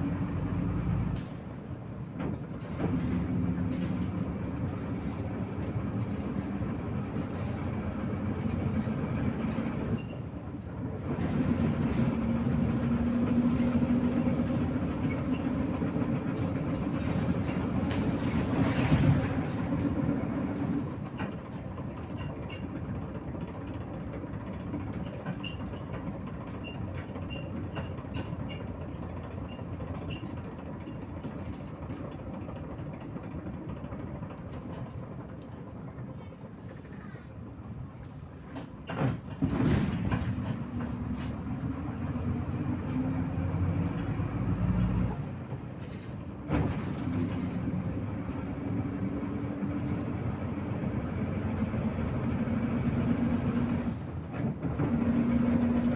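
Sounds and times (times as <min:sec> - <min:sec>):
road noise: 0:00.0 - 0:20.9, 0:39.4 - 0:55.9
bus diesel engine under load: 0:00.0 - 0:55.9.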